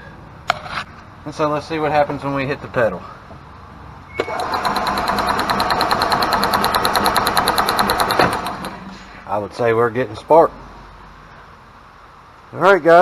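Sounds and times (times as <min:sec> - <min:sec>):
engine cranking whir with ticking: 0:04.2 - 0:09.1.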